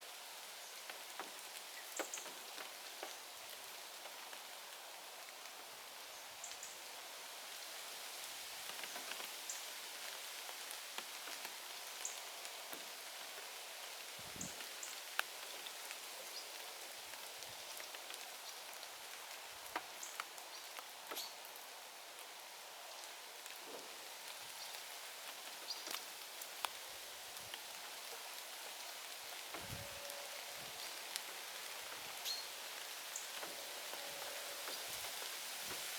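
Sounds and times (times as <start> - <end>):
rain hissing: 0.0 - 35.9
raindrops ticking: 10.4 - 22.4, 30.4 - 35.4.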